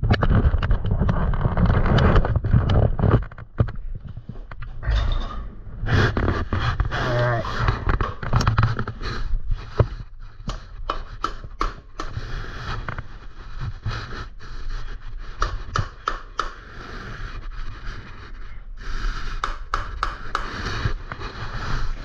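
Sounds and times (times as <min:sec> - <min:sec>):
hands working on metal parts: 0:04.5 - 0:13.8, 0:15.1 - 0:17.0, 0:19.1 - 0:22.0.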